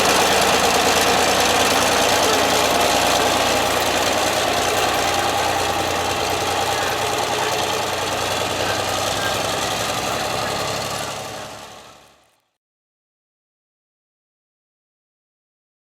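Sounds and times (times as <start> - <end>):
truck engine running: 0.0 - 12.4.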